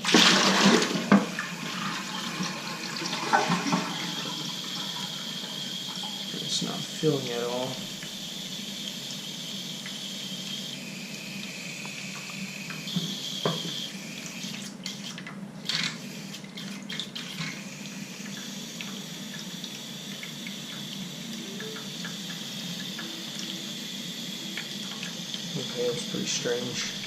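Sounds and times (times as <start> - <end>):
toilet water hissing: 0.0 - 27.0.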